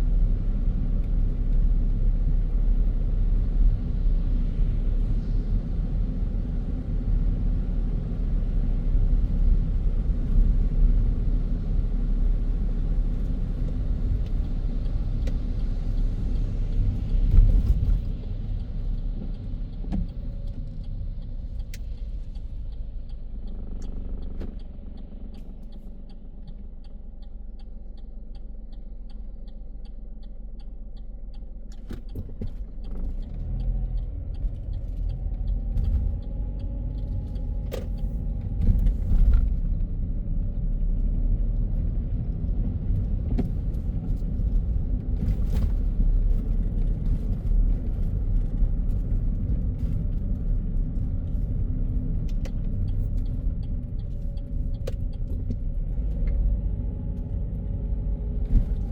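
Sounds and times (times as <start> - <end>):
car road noise in cabin: 0.0 - 58.9
turn signal ticking: 13.1 - 58.9.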